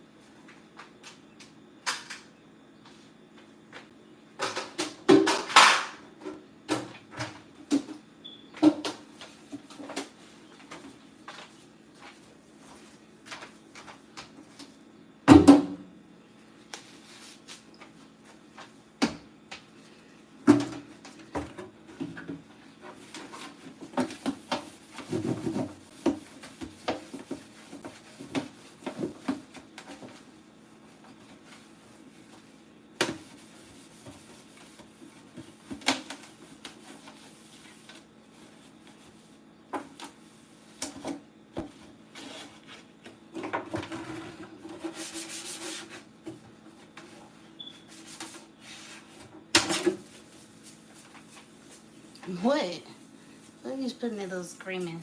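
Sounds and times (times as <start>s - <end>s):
rubbing and scrubbing: 22.8s - 30.2s, 33.1s - 39.3s, 44.0s - 46.1s.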